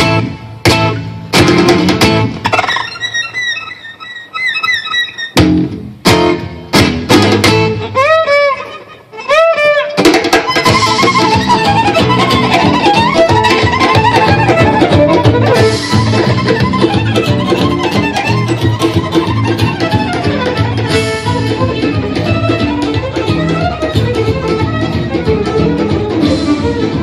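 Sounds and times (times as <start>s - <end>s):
live rock band: 0.0s - 27.0s
violin sliding chirps: 2.4s - 5.4s.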